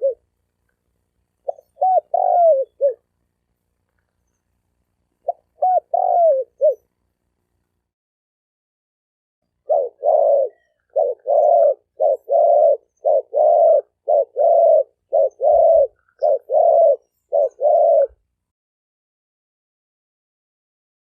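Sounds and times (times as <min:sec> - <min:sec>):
dove cooing: 0:00.0 - 0:00.3, 0:01.4 - 0:03.1, 0:05.2 - 0:06.9, 0:09.5 - 0:18.3.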